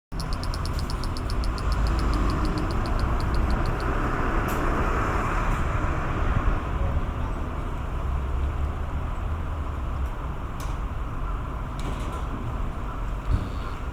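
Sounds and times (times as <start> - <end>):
cicada pulsing song: 0.1 - 4.1
traffic rumble: 0.1 - 13.9.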